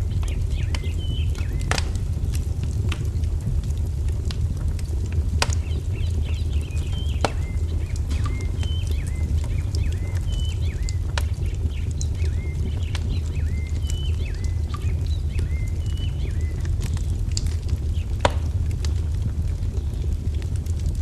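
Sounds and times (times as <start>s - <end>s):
wood fire crackling: 0.0s - 21.0s
bird calling: 5.5s - 11.0s.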